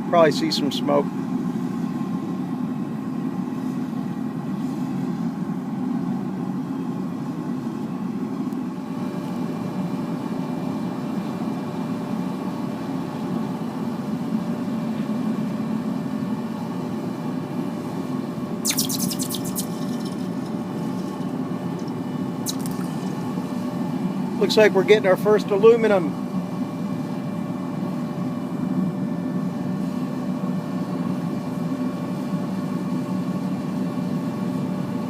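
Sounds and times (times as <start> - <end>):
blower hum: 0.0 - 35.0
propane burner rushing: 17.9 - 27.0
sharp clicks: 18.7 - 20.0.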